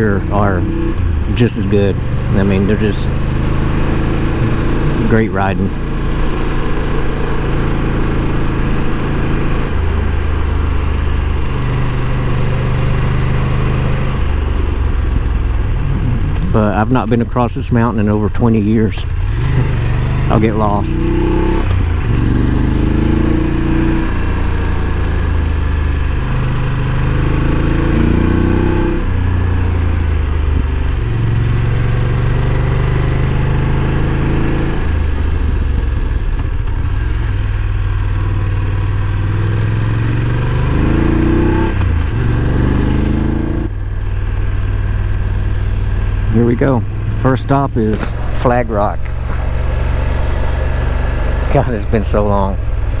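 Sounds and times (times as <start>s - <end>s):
motorcycle engine revving: 0.0s - 53.0s
riding wind noise: 45.4s - 53.0s.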